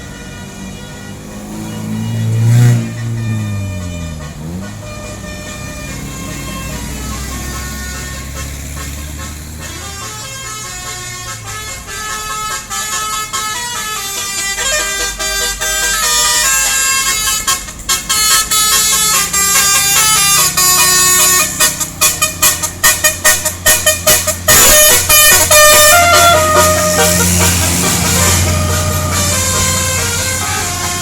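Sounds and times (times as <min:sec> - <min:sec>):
bus multi-tone horn tune: 0:00.0 - 0:31.0
rapid short horn toots: 0:08.3 - 0:31.0.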